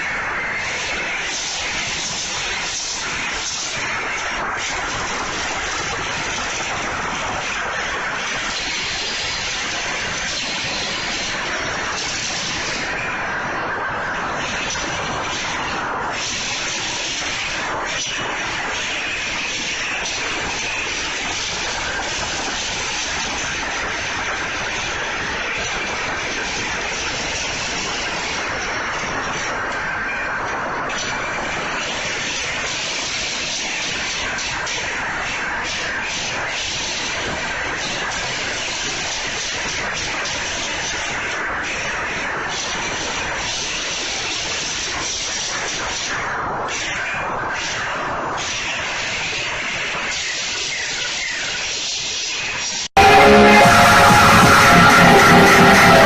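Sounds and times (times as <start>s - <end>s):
slot machine rushing noise: 53.0s - 56.0s.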